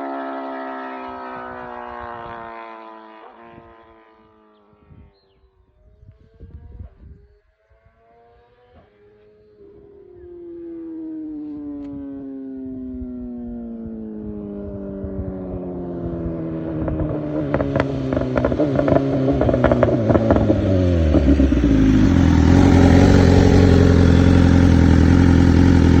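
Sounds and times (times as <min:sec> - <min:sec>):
motorcycle engine revving down: 0:15.6 - 0:26.0
exhaust pops and crackles: 0:16.8 - 0:26.0.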